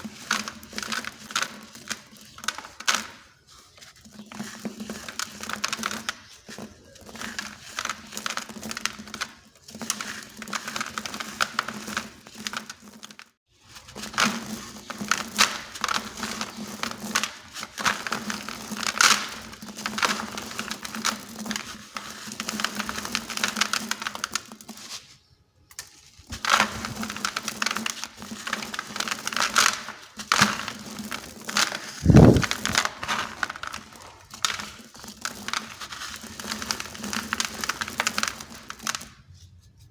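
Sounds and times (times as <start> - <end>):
blocks crushed gritty crunching: 26.3 - 38.8.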